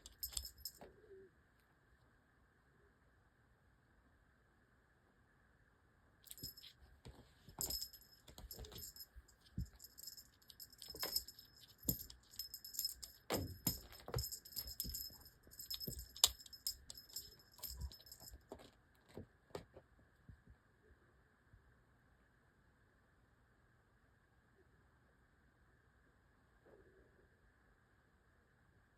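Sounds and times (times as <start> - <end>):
small bell jingling: 0.0 - 0.8, 6.3 - 6.8, 7.5 - 18.6.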